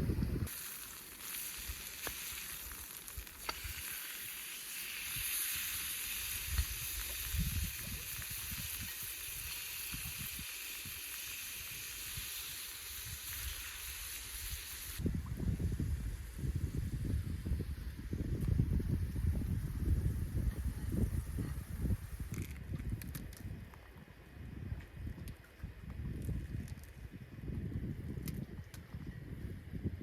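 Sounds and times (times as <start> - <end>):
sharp pops: 0.4 - 5.4
steak sizzling: 0.5 - 15.0.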